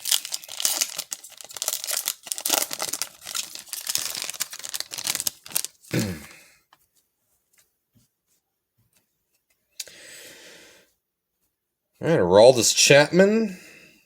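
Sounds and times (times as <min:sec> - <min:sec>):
foil wrapper tearing and crinkling: 0:00.0 - 0:06.2.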